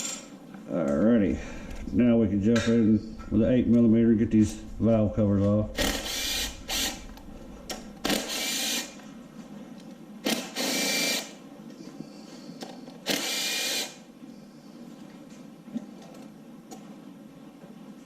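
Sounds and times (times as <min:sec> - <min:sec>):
cordless impact gun bursts: 0:05.8 - 0:07.2, 0:08.0 - 0:09.0, 0:10.2 - 0:11.4, 0:13.0 - 0:14.0.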